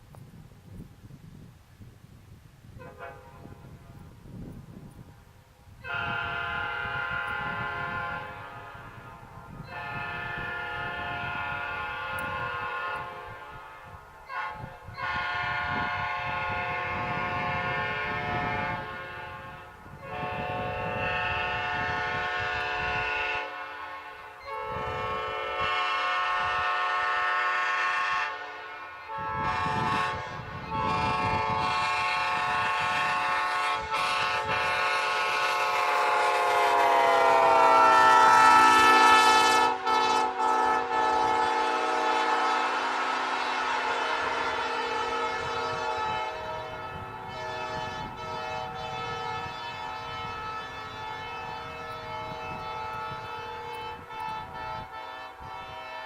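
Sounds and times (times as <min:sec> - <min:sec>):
locomotive air horn blasts: 0:02.8 - 0:05.0, 0:05.8 - 0:56.0.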